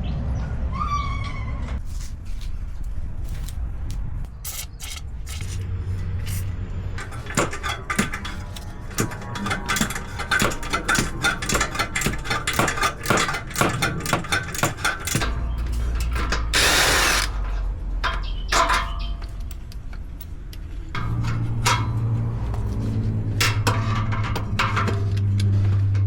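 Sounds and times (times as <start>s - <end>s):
steady low hum: 1.8s - 26.0s
metal clanks: 4.8s - 26.0s
ratchet clicking: 6.2s - 21.2s.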